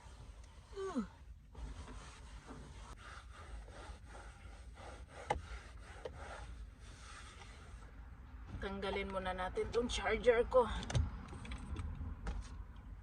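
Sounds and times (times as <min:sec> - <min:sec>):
cloth rubbing surface: 0:01.5 - 0:07.9.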